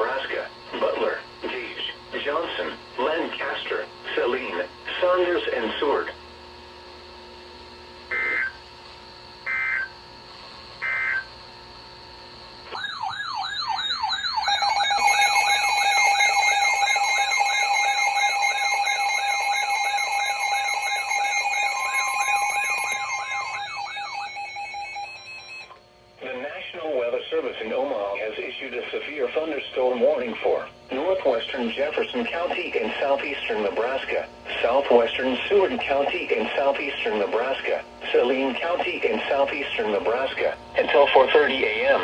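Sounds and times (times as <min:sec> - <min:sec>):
digital data tone bursts: 0:08.1 - 0:08.6, 0:10.8 - 0:11.3, 0:13.7 - 0:26.6
warbling siren-like alarm: 0:08.1 - 0:08.6, 0:09.4 - 0:10.0, 0:10.8 - 0:11.4, 0:12.6 - 0:26.4
steady electronic tones: 0:08.1 - 0:08.7, 0:10.8 - 0:11.4, 0:12.6 - 0:27.5.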